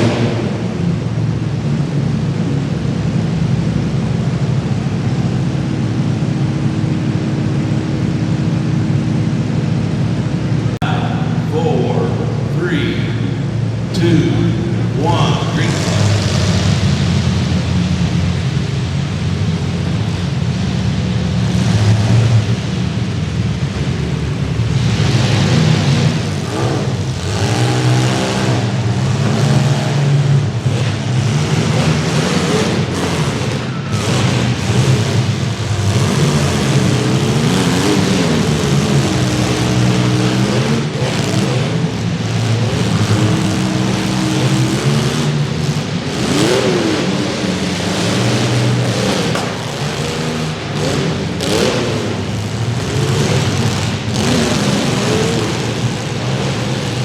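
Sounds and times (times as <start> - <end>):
car engines revving: 0.0 - 57.0
sharp bangs: 47.7 - 52.2.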